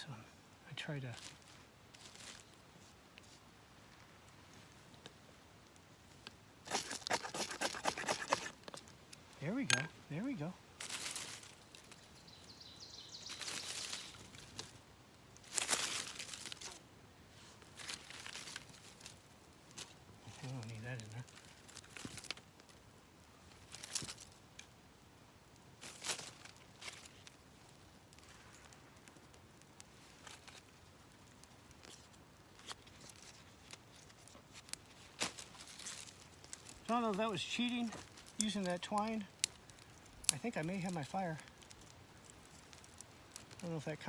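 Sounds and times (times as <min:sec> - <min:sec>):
tinder rustling and crackling: 0:01.0 - 0:44.0.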